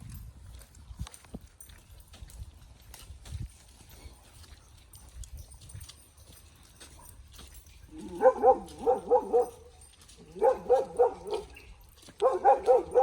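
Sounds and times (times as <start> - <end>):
dog barking: 8.0 - 13.0.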